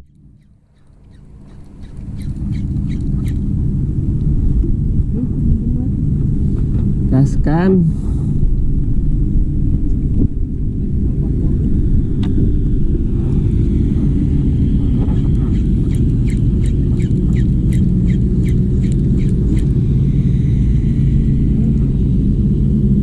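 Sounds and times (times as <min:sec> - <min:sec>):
wind buffeting microphone: 0:00.0 - 0:23.0
sharp chirping clicks: 0:15.5 - 0:19.7.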